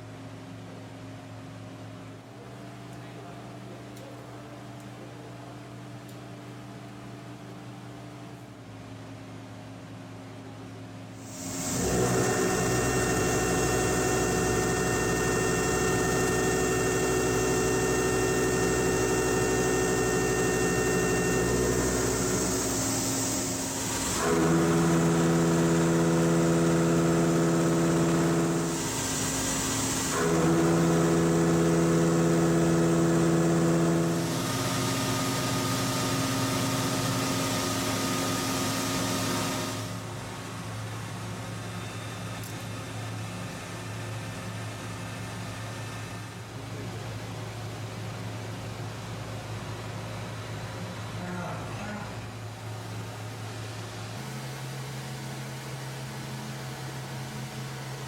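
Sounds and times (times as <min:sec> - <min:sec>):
machine tool cutting metal: 0:11.3 - 0:39.9.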